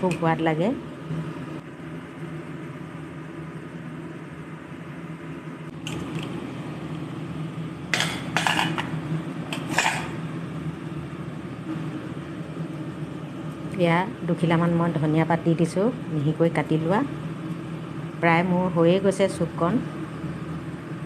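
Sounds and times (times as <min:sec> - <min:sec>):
steady low hum: 0:00.0 - 0:21.0
metal utensils clinking: 0:07.9 - 0:08.8, 0:09.5 - 0:10.2.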